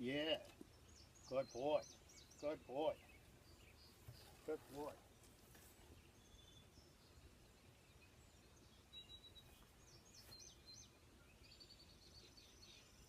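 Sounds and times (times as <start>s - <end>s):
bird chirps: 0.0s - 13.0s.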